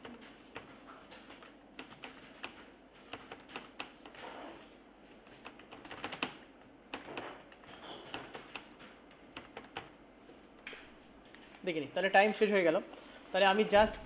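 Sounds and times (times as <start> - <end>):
computer keyboard typing: 0.0 - 4.2, 5.2 - 10.0.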